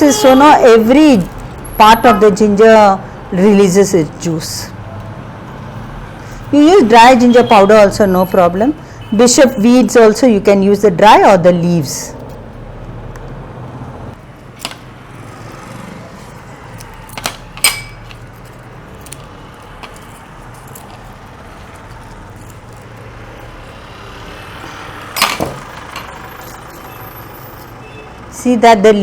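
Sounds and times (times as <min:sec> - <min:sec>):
kitchen utensils clinking: 0:17.1 - 0:18.5, 0:25.2 - 0:26.1.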